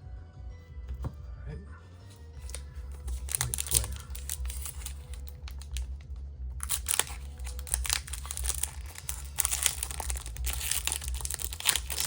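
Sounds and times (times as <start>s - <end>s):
foil wrapper crinkling: 2.4s - 6.0s, 6.6s - 12.0s.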